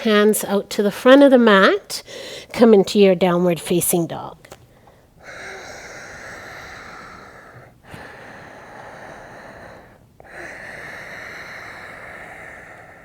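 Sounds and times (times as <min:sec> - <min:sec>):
hissing breaths in and out: 0:04.7 - 0:13.0.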